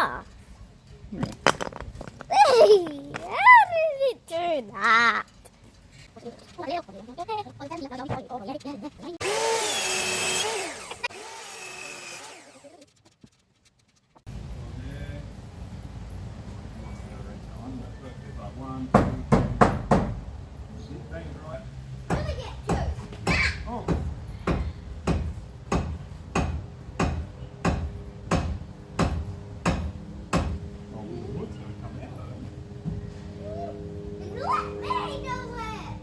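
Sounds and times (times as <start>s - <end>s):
power drill motor whine: 9.2s - 12.7s
hammer driving nails into wood: 23.3s - 30.6s.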